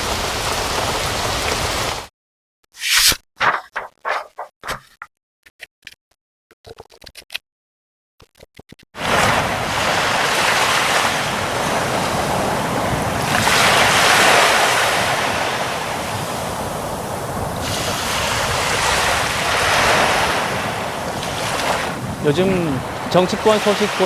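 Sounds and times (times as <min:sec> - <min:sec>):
ocean waves breaking: 0:09.0 - 0:24.0.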